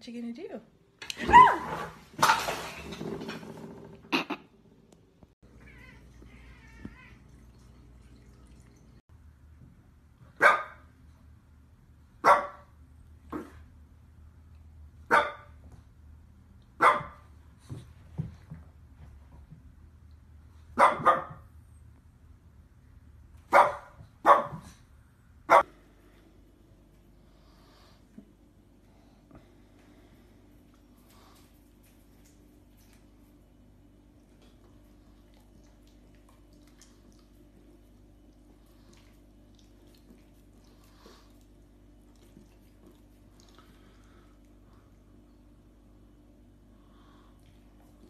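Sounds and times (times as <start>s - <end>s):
cat meowing: 5.5s - 7.2s
dog barking: 10.4s - 10.8s, 12.2s - 12.7s, 15.1s - 15.6s, 16.8s - 17.2s, 20.8s - 21.4s, 23.5s - 24.7s, 25.5s - 25.7s.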